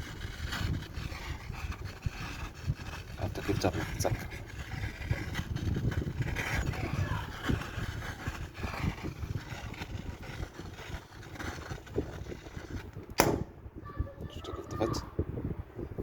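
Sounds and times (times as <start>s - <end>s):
torch flame rumbling: 0.0s - 13.9s
flame going out with a pop: 13.1s - 13.6s.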